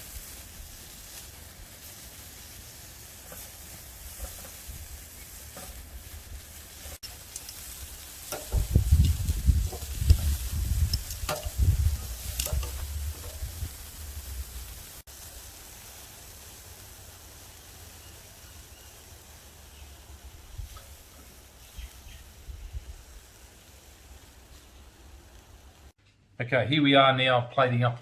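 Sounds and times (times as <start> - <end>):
meat sizzling over a fire: 0.0 - 26.0
fire crackling pops: 0.0 - 26.2
low rumble: 8.6 - 15.0.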